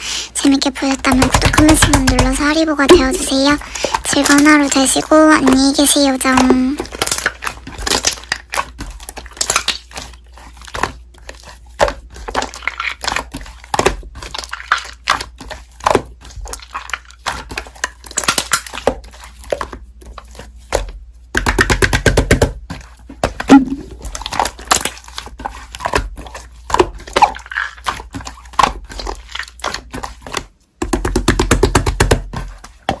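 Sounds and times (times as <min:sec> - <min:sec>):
slime crackling: 0:00.5 - 0:19.6.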